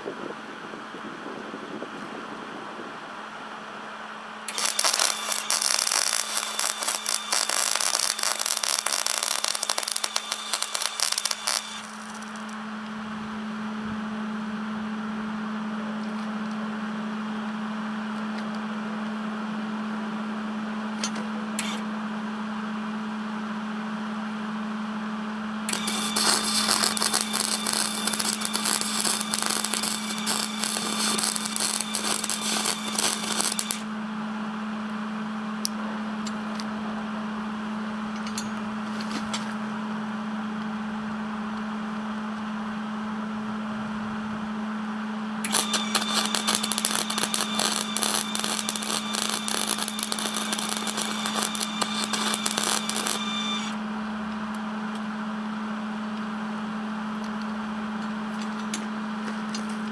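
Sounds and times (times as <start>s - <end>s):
steady hum: 0.0s - 15.7s, 25.3s - 54.6s
welder arc crackling and sizzling: 4.5s - 12.6s, 25.7s - 33.9s, 45.5s - 53.8s.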